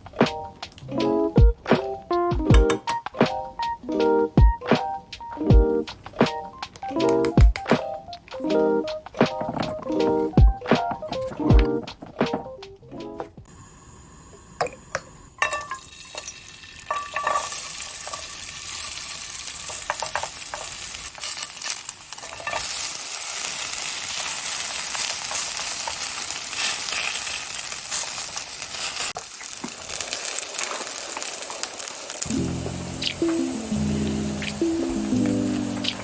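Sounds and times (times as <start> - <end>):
pancake sizzling in oil: 15.2 - 36.0
utensil clinking against pan: 16.9 - 18.3.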